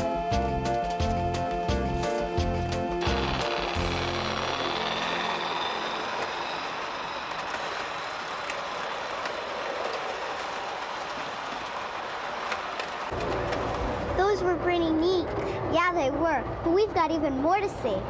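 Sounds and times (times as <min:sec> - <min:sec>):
model train wheels rumbling: 0:03.0 - 0:14.4.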